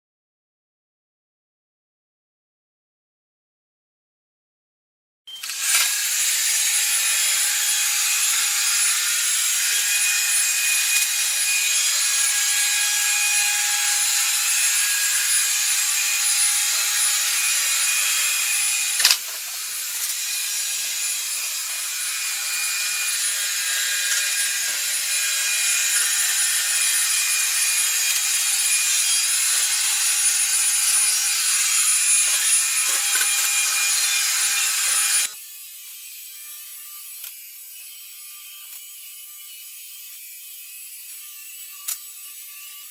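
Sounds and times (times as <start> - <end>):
robot vacuum whirring: 5.3 - 36.0.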